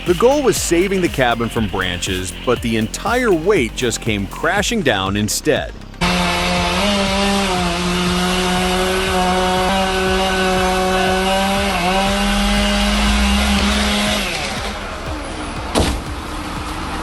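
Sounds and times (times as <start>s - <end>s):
chainsaw running: 5.8s - 17.0s.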